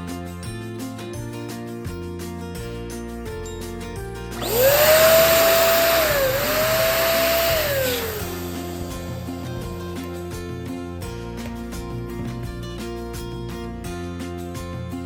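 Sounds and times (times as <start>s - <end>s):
background music: 0.0s - 15.0s
electric balloon pump whine: 4.4s - 9.8s.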